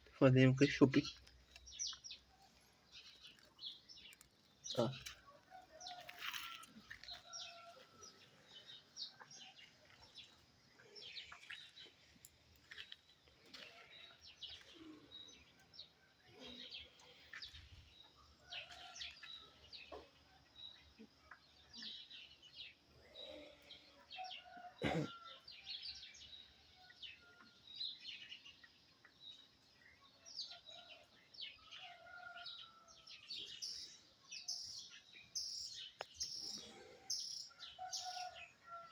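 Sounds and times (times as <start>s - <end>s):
birds chirping: 0.0s - 25.3s.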